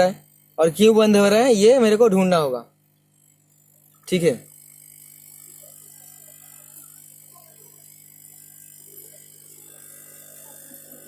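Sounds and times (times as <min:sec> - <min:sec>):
faint high whine: 0:00.0 - 0:11.0
low electrical hum: 0:00.0 - 0:11.0.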